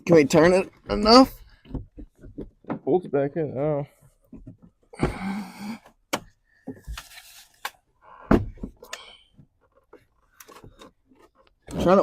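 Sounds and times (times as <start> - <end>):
plastic housing knocking and scraping: 0.4 - 3.1.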